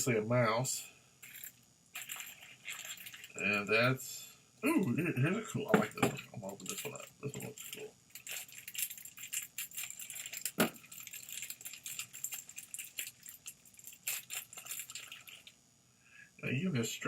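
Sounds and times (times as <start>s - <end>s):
plastic wrapper crinkling: 1.2s - 3.7s, 6.4s - 15.6s.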